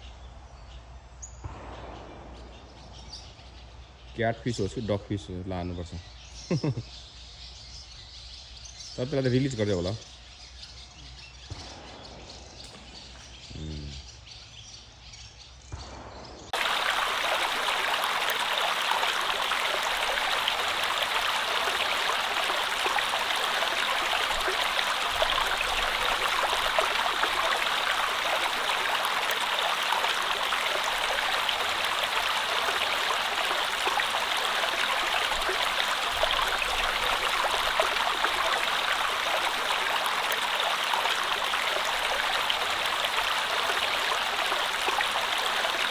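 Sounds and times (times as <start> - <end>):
faint voice: 13.5 - 14.0
stream water rushing: 16.6 - 45.9.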